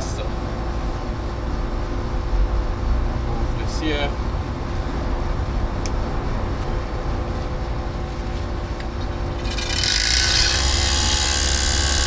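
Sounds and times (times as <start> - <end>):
vacuum pump running: 8.8 - 12.0.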